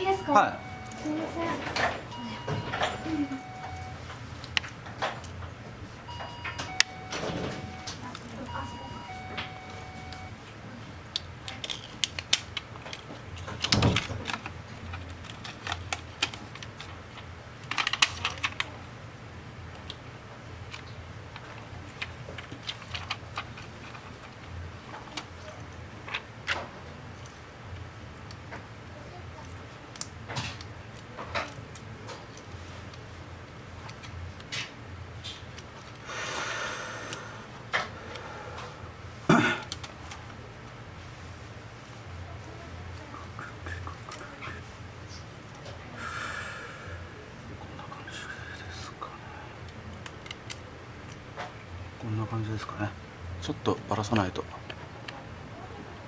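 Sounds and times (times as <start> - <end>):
low steady hum: 0.0 - 56.0
small tools clicking and tapping: 11.1 - 18.7, 20.7 - 28.7, 29.3 - 33.0.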